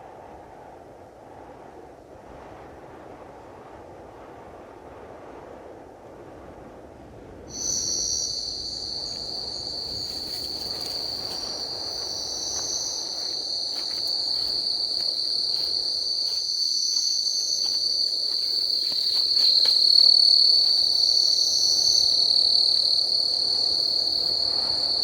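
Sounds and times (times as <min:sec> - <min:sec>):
faint low rush: 0:00.0 - 0:25.0
insects trilling: 0:07.5 - 0:25.0.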